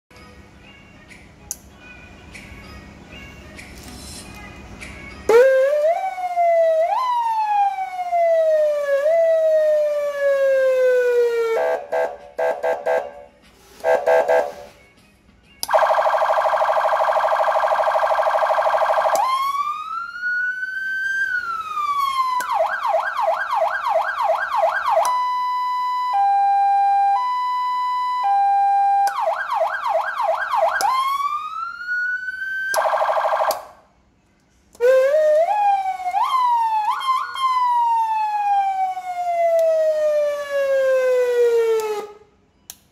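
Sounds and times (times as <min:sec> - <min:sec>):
electronic siren tones: 0:15.7 - 0:33.8.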